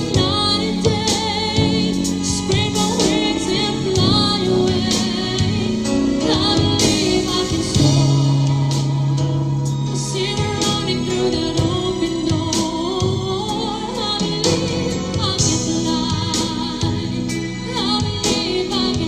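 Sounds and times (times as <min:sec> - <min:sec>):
band accompaniment: 0:00.0 - 0:19.0
person singing pop ballad: 0:00.0 - 0:19.0.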